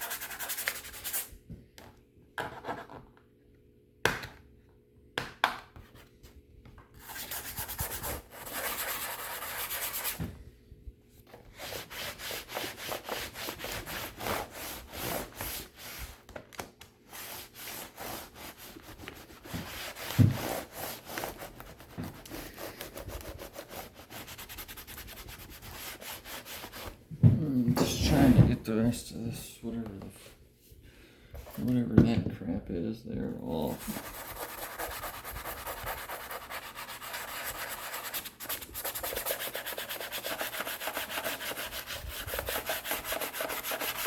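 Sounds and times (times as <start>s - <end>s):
scrubbing a laptop case: 17.1s - 27.0s, 33.8s - 44.0s.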